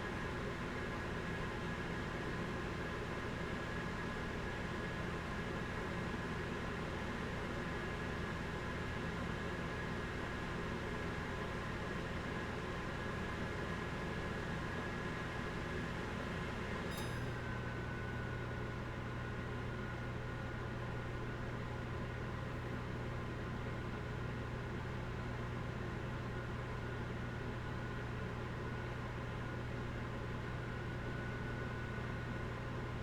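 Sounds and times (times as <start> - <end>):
microwave fan humming: 13.2 - 33.0.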